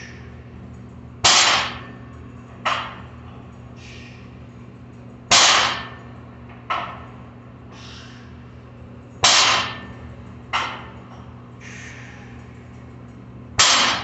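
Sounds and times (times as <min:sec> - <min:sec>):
steady low hum: 0:00.0 - 0:14.0
barbell dropping on floor: 0:13.6 - 0:14.0.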